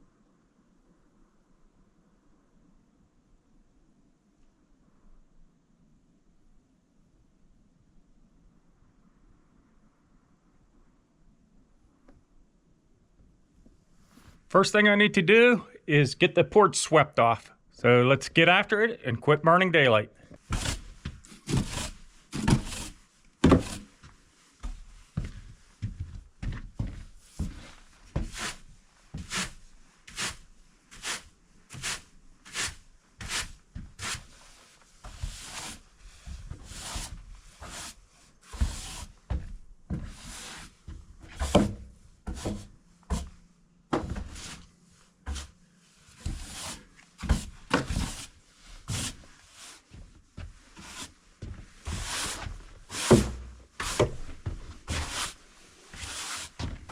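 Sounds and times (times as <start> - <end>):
broom sweeping snow: 20.5 - 24.6, 27.2 - 39.3, 40.0 - 41.5, 44.2 - 44.7, 45.3 - 56.6.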